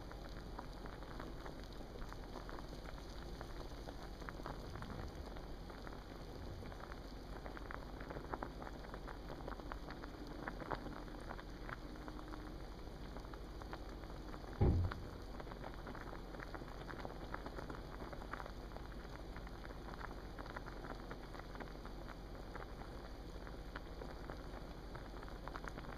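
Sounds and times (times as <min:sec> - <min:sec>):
water boiling in a pot: 0:00.0 - 0:25.9
loud low thump: 0:14.6 - 0:15.2.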